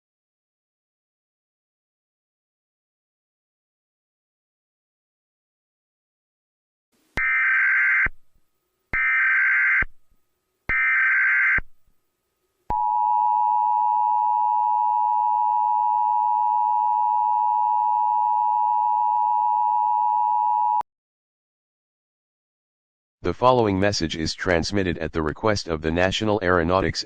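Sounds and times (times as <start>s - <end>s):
two-tone electronic alert tone: 12.7s - 20.8s.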